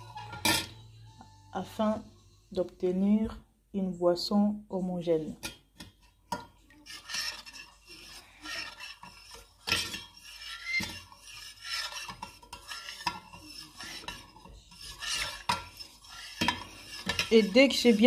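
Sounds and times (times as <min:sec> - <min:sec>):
spoon stirring and scraping: 0:00.0 - 0:01.0, 0:05.0 - 0:18.0.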